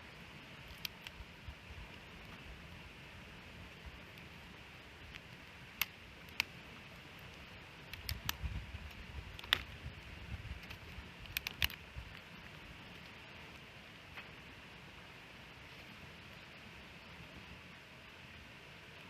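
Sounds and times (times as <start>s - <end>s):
wood fire crackling and popping: 0.5s - 2.5s, 3.6s - 14.4s.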